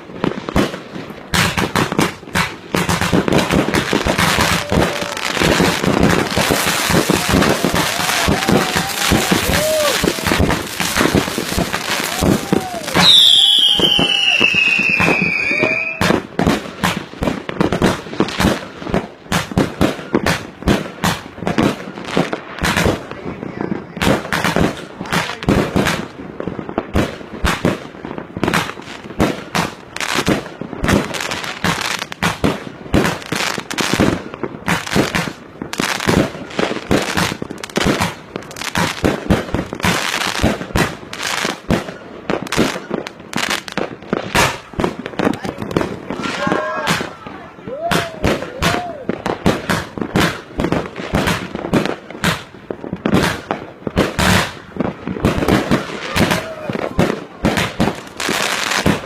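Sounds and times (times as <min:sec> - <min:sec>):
fireworks bangs and crackles: 0:00.0 - 0:59.0.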